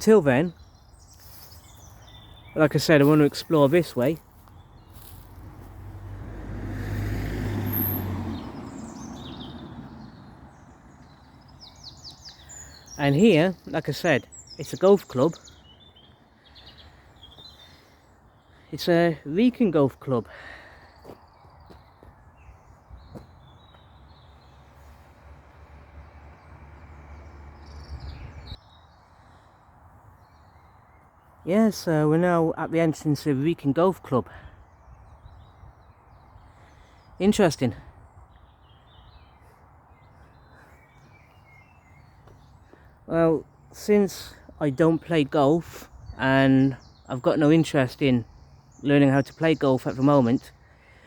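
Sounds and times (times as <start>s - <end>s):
birds chirping: 0.0s - 51.0s
car passing by: 5.0s - 11.1s, 24.6s - 28.6s.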